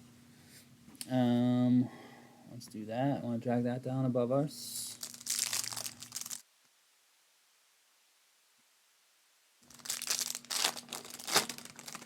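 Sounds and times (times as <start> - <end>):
card pack wrappers crinkling and tearing: 4.9 - 6.4, 9.6 - 12.0.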